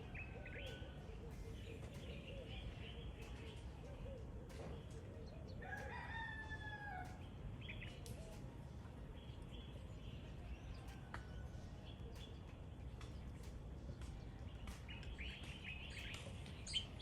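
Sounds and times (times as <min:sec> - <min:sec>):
small birds chirping: 0:00.0 - 0:06.2, 0:07.0 - 0:17.0
low background noise: 0:00.0 - 0:17.0
rooster crowing: 0:05.6 - 0:07.2.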